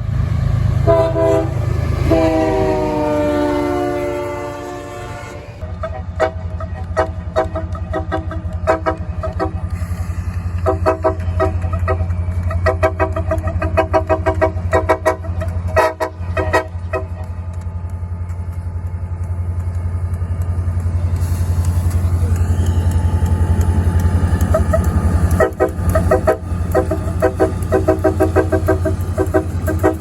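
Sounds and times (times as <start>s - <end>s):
passing train rumbling: 0.0s - 30.0s
locomotive air horn blasts: 0.8s - 9.8s, 10.6s - 17.2s, 25.3s - 30.0s.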